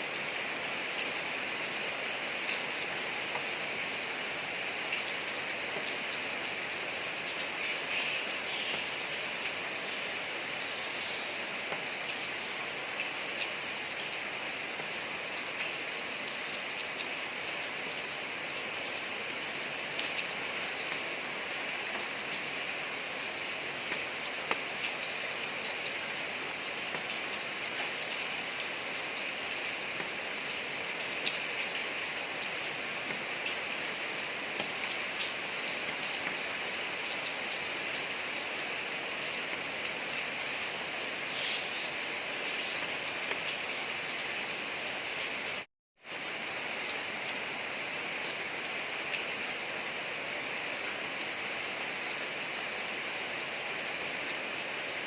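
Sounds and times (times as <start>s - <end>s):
rain falling on a street: 0.0s - 55.0s.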